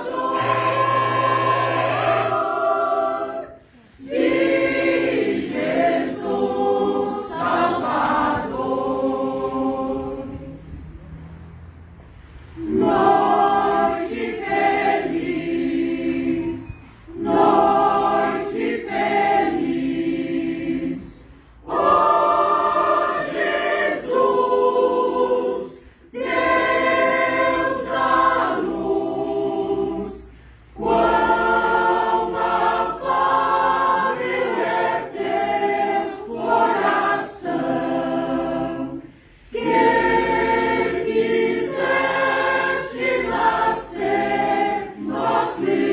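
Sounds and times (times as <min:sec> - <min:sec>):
mixed choir singing: 0:00.0 - 0:10.8, 0:12.5 - 0:45.9.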